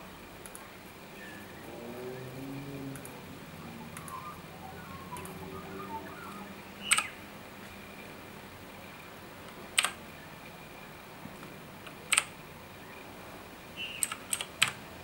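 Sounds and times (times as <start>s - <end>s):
keyboard key clicks: 12.1s - 12.3s.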